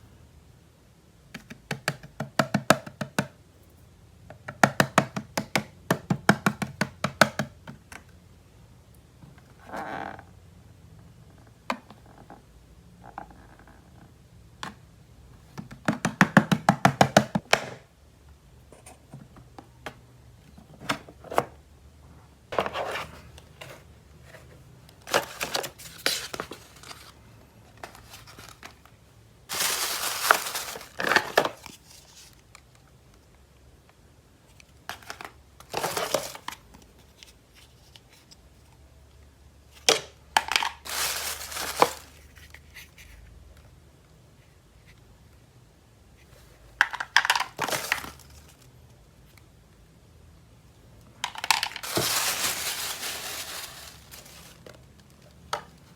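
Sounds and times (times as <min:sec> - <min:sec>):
plastic packaging crinkling and tearing: 0:25.0 - 0:27.2, 0:29.5 - 0:32.4, 0:40.6 - 0:42.6, 0:47.2 - 0:48.7, 0:51.2 - 0:54.9.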